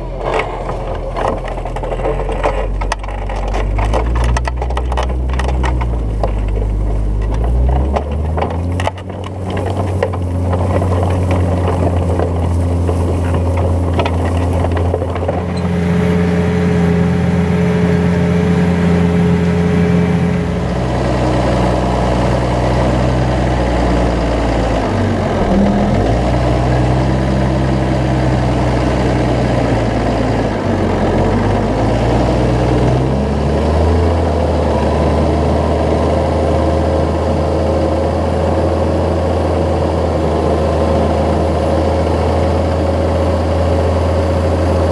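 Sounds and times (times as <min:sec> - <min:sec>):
tractor engine running: 0:00.0 - 0:44.9
rattling clicks: 0:00.2 - 0:15.7.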